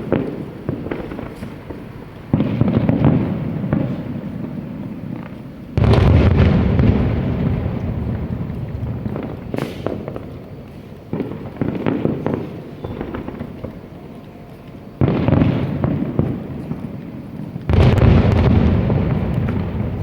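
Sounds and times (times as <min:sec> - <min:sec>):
crackling pops: 0:00.0 - 0:20.0
fireworks bursting: 0:00.0 - 0:20.0
heavy boom with rumbling: 0:05.8 - 0:10.4, 0:17.7 - 0:20.0.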